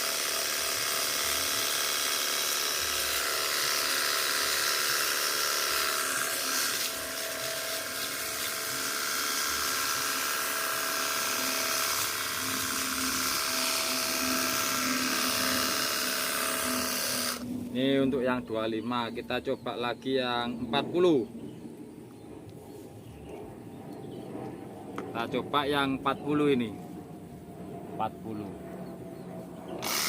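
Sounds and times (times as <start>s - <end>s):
pressure washer motor whining: 0.0s - 17.4s, 29.8s - 30.0s.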